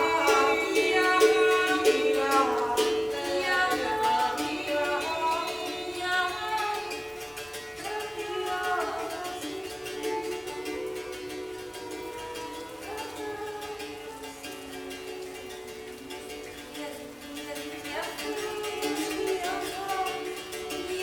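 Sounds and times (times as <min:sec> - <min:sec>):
person singing wordless vocal: 0:00.0 - 0:07.1, 0:07.8 - 0:15.5, 0:16.1 - 0:21.0
plucked string instrument: 0:00.0 - 0:21.0.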